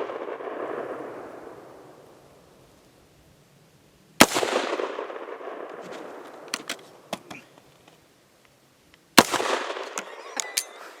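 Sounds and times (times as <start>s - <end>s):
rifle shots with echo: 0.0s - 1.5s, 4.2s - 6.5s, 9.2s - 10.0s.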